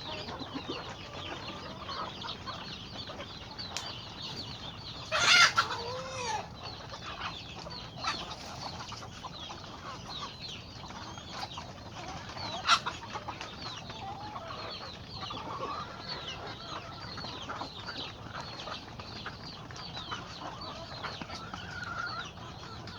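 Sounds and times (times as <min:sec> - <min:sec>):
chickens chirping: 0:00.0 - 0:22.9
loud chicken call: 0:05.0 - 0:06.5.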